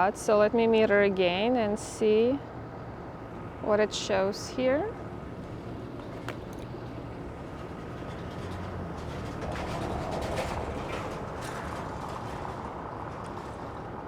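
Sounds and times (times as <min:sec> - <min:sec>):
vehicle passing rumble: 0:02.2 - 0:14.0.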